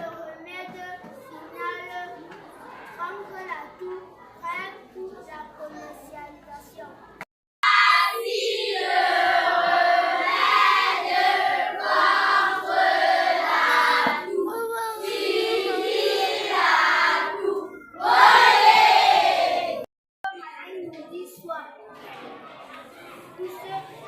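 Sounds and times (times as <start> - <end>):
young children singing: 7.6 - 19.9.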